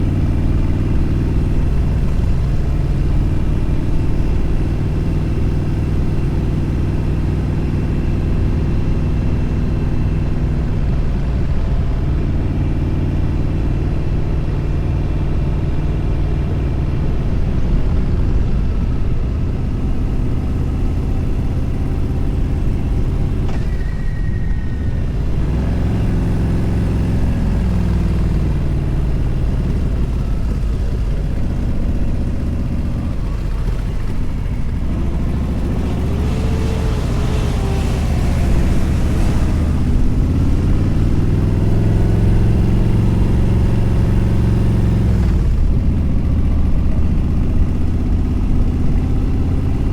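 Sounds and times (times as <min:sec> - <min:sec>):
motorcycle engine accelerating: 0:00.0 - 0:49.9
wind rush: 0:33.1 - 0:41.8.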